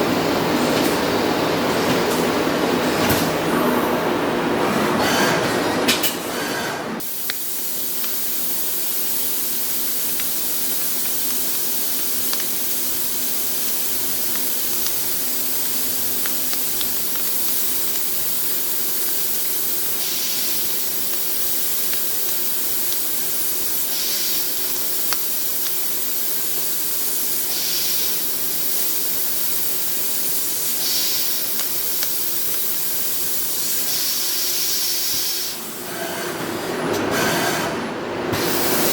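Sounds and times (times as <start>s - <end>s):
mist nozzle hissing: 7.0s - 35.6s.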